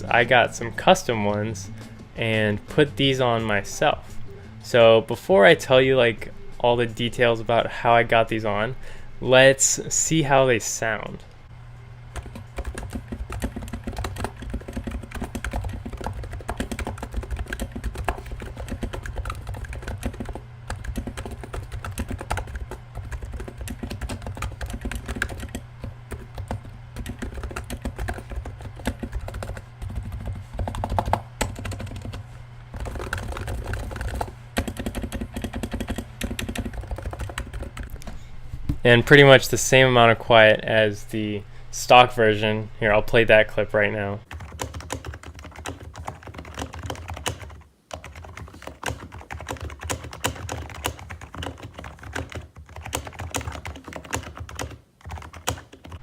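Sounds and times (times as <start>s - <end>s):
quiet keyboard typing: 12.1s - 38.1s, 44.3s - 56.0s.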